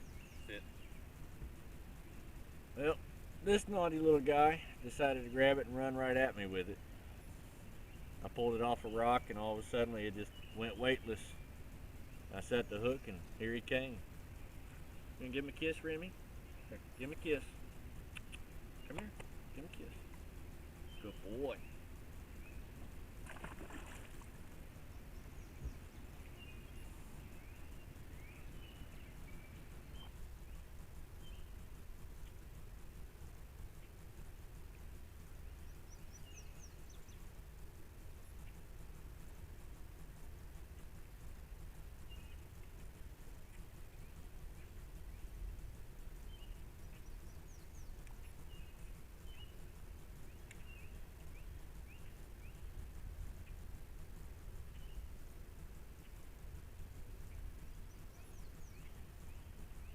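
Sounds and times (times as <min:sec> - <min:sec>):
birds chirping: 0:00.0 - 0:59.9
steady low rumble: 0:00.0 - 0:59.9
sharp clicks: 0:18.0 - 0:20.3.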